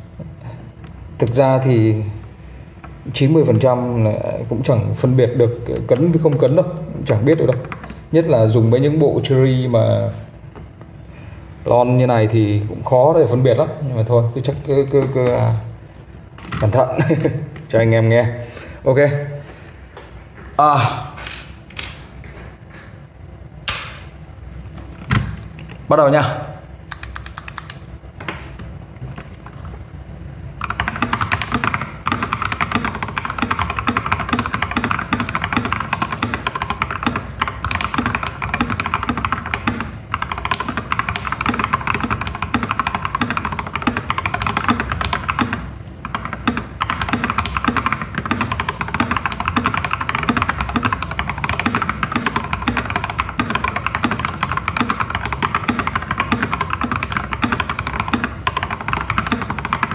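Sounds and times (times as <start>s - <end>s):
mechanical keyboard typing: 3.1s - 9.0s, 26.2s - 27.9s, 30.6s - 59.9s.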